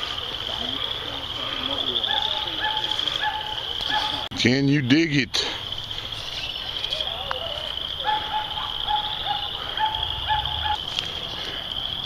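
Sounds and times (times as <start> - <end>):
crickets trilling: 0.0 - 12.0
bird calling: 5.5 - 12.0.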